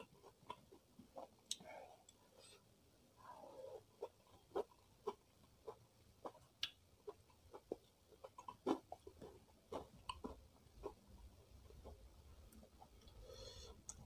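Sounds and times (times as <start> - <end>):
person chewing crunchy food: 3.4 - 14.0.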